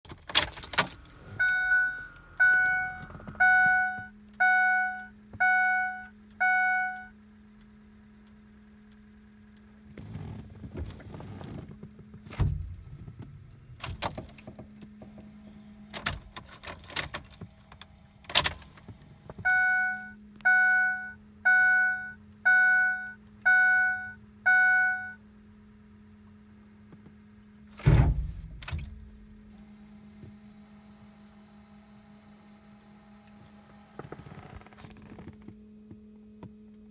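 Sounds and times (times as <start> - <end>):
truck warning chime dinging: 0.4 - 7.1, 19.4 - 25.2
thunk: 27.8 - 29.2.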